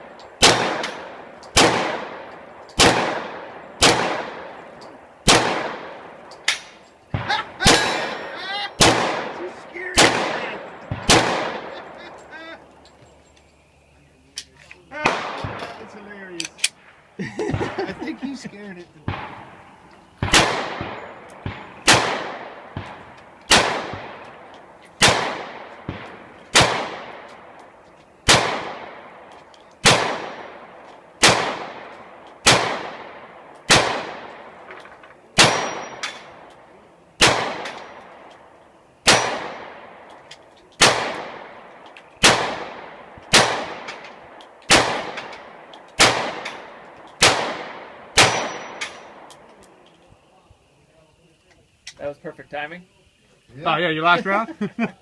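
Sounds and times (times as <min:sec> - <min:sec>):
pistol shots ringing: 0:00.0 - 0:12.6, 0:15.0 - 0:16.0, 0:20.2 - 0:27.6, 0:28.2 - 0:36.6, 0:37.2 - 0:38.4, 0:39.0 - 0:40.2, 0:40.8 - 0:49.5.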